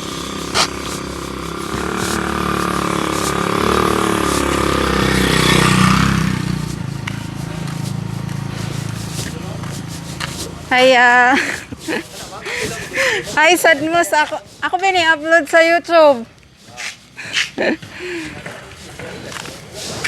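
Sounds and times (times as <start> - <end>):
motor vehicle passing by: 0.0 - 14.8.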